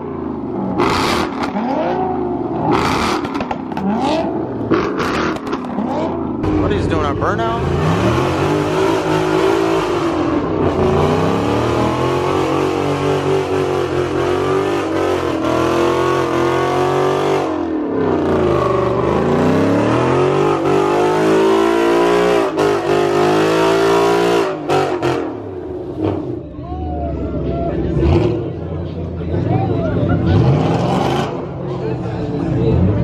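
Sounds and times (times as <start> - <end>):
car engine revving high: 0.1 - 26.4, 30.2 - 31.6.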